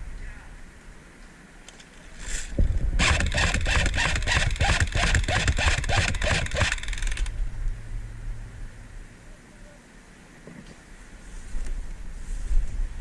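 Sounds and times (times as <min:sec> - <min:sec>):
airsoft machine gun burst: 0:02.2 - 0:07.3.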